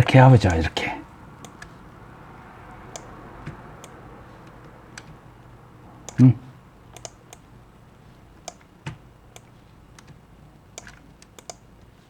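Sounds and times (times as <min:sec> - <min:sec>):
faint steady hum: 0:00.0 - 0:12.0
computer mouse and keyboard clicks: 0:01.4 - 0:01.8, 0:02.9 - 0:05.2, 0:06.9 - 0:07.5, 0:08.4 - 0:12.0.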